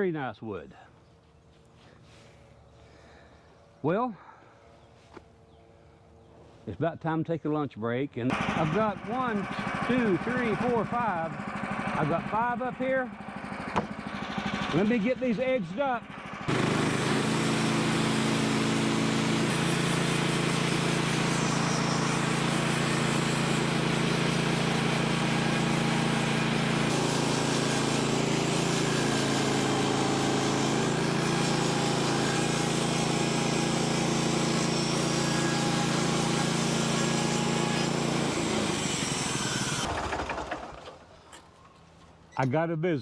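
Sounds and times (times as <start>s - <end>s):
sawmill gas engine running: 8.3s - 41.1s
blade cutting boards: 16.5s - 40.4s.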